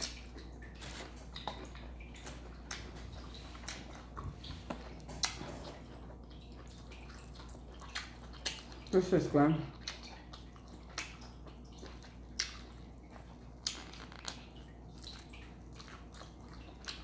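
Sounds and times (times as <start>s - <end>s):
wet chewing: 0.0s - 17.0s
mouth clicks and smacks: 13.6s - 14.5s.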